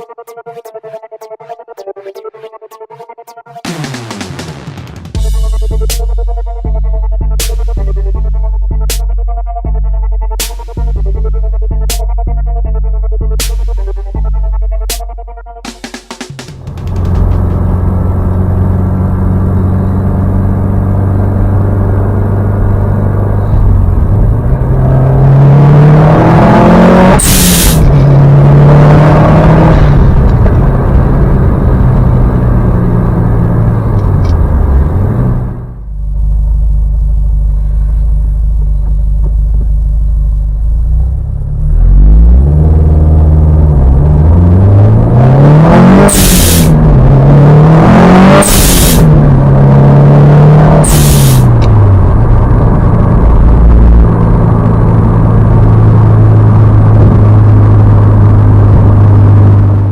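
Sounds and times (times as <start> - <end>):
car engine running: 3.7 - 59.9
blow-off valve hissing whoosh: 48.4 - 49.0, 50.8 - 51.5.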